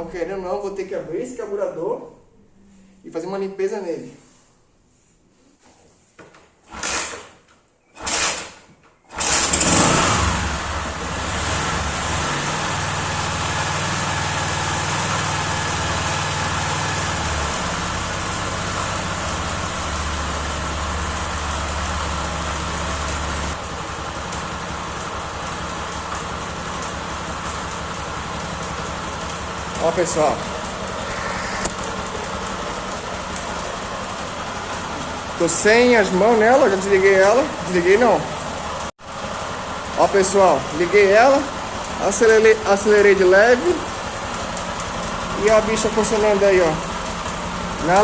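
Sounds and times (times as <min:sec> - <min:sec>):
motorcycle engine cranking: 0:06.6 - 0:14.0, 0:17.1 - 0:48.0
motorcycle engine running: 0:09.1 - 0:48.0.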